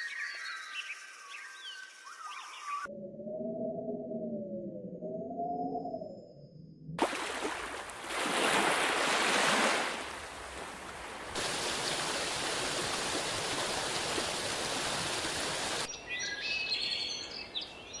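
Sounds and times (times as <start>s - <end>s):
birds chirping: 10.0s - 18.0s.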